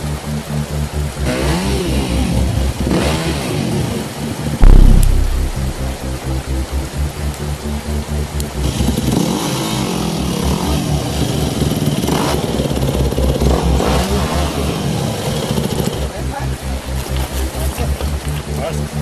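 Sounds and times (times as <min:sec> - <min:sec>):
motorcycle engine revving: 0:01.1 - 0:06.6, 0:08.6 - 0:17.0
background music with beat: 0:04.6 - 0:08.7.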